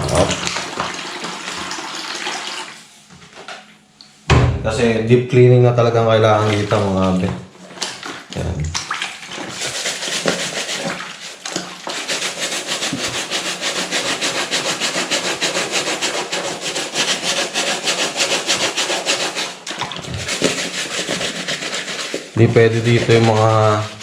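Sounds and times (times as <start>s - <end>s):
brush scrubbing sneaker: 9.5s - 24.0s.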